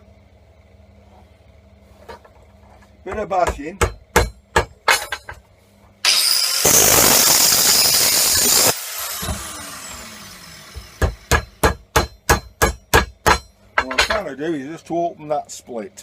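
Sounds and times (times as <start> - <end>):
angle grinder cutting steel: 6.0 - 11.3.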